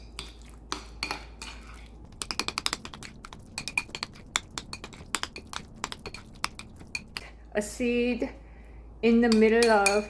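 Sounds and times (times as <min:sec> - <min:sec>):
utensil clinking against bowl: 0:00.1 - 0:07.3, 0:09.2 - 0:10.0.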